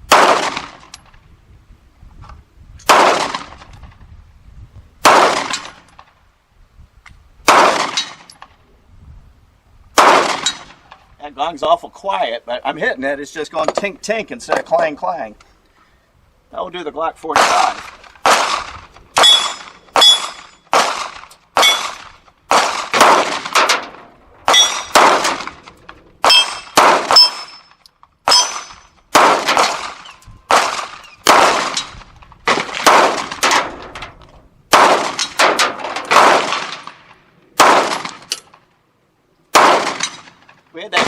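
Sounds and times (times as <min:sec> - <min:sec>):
pistol shots: 0:00.1 - 0:00.9, 0:02.8 - 0:03.7, 0:05.0 - 0:05.9, 0:07.4 - 0:08.4, 0:10.0 - 0:10.8, 0:17.4 - 0:25.6, 0:26.2 - 0:27.6, 0:28.2 - 0:33.9, 0:34.7 - 0:38.5, 0:39.5 - 0:41.0.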